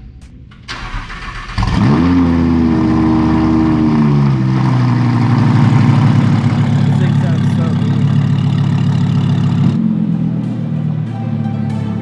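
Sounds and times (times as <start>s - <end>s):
sports car engine starting and idling: 0.0s - 12.0s.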